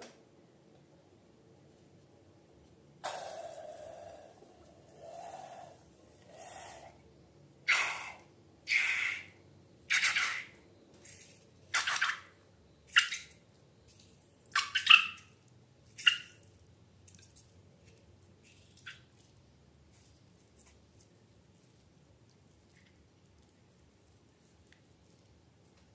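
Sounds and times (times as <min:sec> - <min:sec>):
wet slime squishing: 0:12.9 - 0:25.9.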